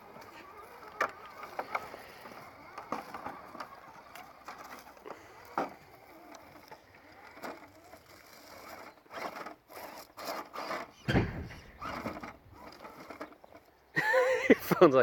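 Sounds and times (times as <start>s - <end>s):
electric motor whirring: 0.0s - 13.8s
sharp clicks and knocks: 11.0s - 13.4s.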